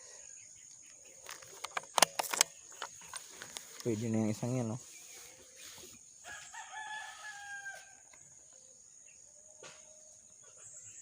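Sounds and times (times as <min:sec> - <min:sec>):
faint rooster crowing: 0:06.2 - 0:08.2.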